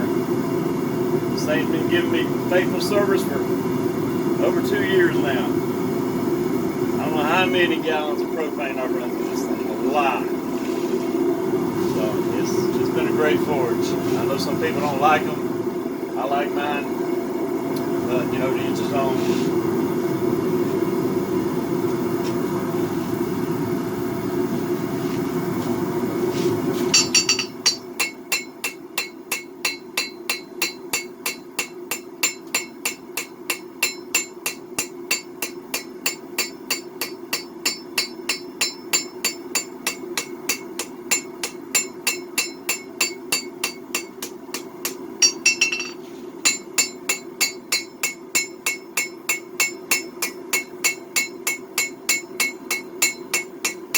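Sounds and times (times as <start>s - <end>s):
gas forge rushing: 0.0s - 28.1s
hammer ringing on anvil: 26.9s - 53.9s.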